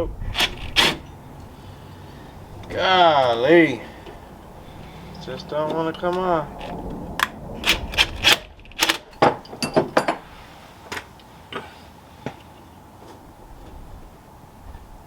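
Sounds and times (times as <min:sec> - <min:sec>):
metal tools clinking: 0:05.1 - 0:06.8, 0:08.2 - 0:10.3.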